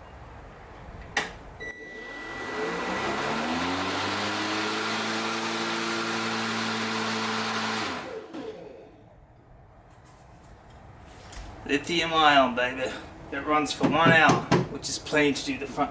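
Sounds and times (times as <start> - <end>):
electric lawnmower motor whirring: 1.8 - 9.0.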